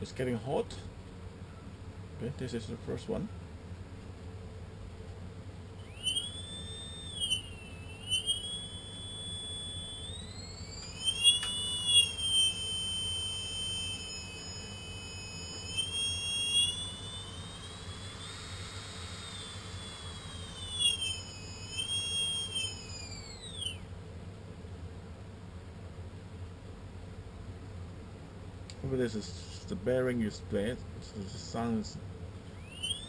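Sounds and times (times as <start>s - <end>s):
drone motor whine: 5.8s - 23.9s, 32.5s - 33.0s
sharp click: 10.7s - 12.5s.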